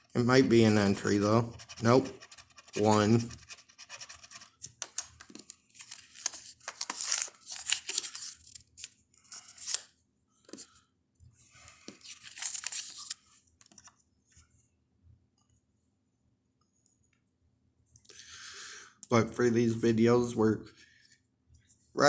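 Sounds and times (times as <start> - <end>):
scratch-off ticket being scratched: 0.0 - 4.6.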